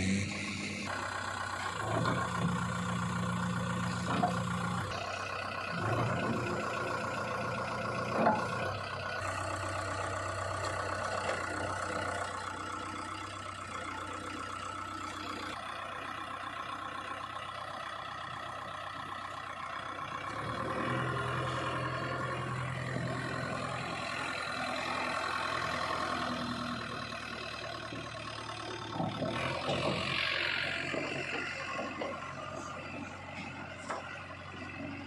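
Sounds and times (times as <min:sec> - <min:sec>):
heavy machinery diesel engine: 0:00.0 - 0:35.0
irregular clattering and knocks: 0:28.9 - 0:30.1.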